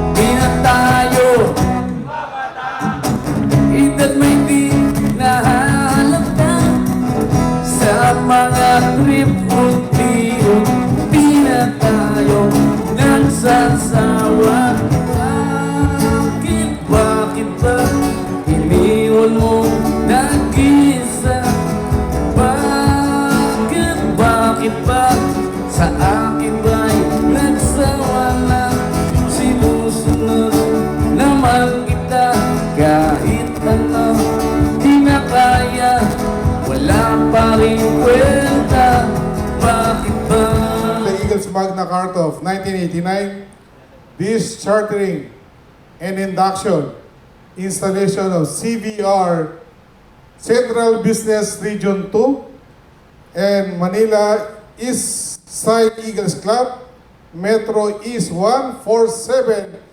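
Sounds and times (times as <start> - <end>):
song with singing voice: 0.0 - 41.8.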